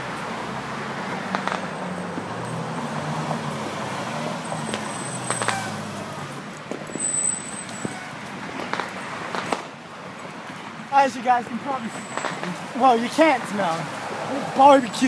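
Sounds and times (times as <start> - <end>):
vehicle engine hum: 0.0 - 15.0
high squeal: 6.9 - 8.2.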